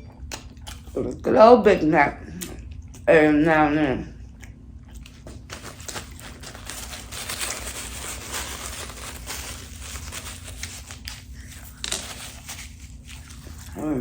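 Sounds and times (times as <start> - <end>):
faint steady hum: 0.0 - 14.0
wet chewing and mouth clicks: 4.3 - 5.5.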